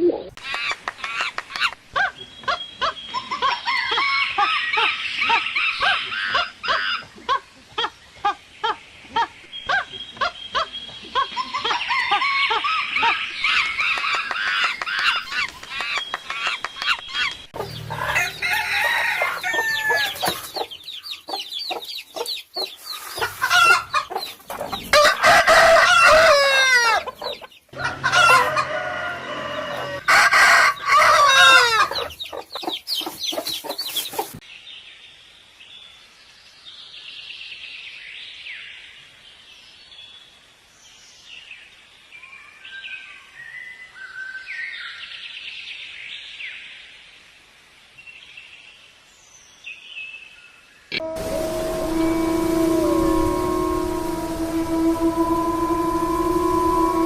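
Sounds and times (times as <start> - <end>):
hens clucking: 11.2 - 34.4
roosters crowing: 17.6 - 34.4, 50.9 - 57.0.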